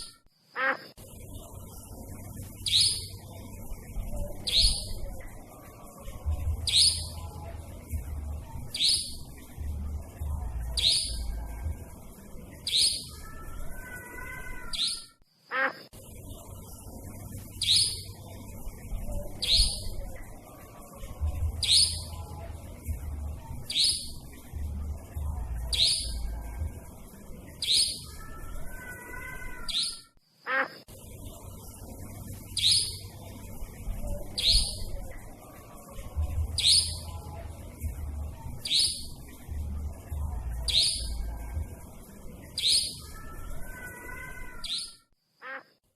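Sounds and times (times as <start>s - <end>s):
nightjar calls: 0.0s - 1.0s, 2.6s - 3.2s, 4.4s - 5.0s, 6.6s - 7.2s, 8.7s - 9.3s, 10.7s - 11.3s, 12.6s - 15.9s, 17.6s - 18.1s, 19.4s - 20.0s, 21.6s - 22.1s, 23.7s - 24.2s, 25.7s - 26.2s, 27.6s - 30.8s, 32.6s - 33.1s, 34.3s - 35.0s, 36.6s - 37.1s, 38.6s - 39.1s, 40.7s - 41.2s, 42.6s - 45.6s
low rumble: 6.0s - 12.0s, 21.0s - 23.7s, 36.0s - 38.6s.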